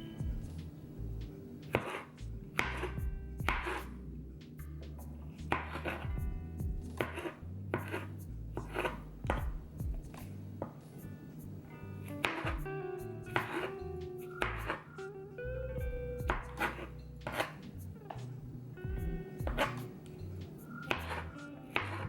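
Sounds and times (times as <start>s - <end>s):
knife slicing on cutting board: 1.7s - 2.9s, 7.0s - 9.0s, 16.6s - 17.6s.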